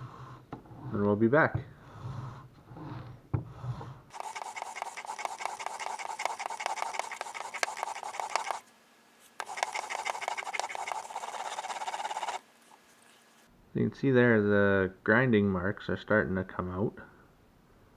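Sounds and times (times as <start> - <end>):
chisel rasping on sandpaper: 4.1 - 8.6, 9.4 - 12.4.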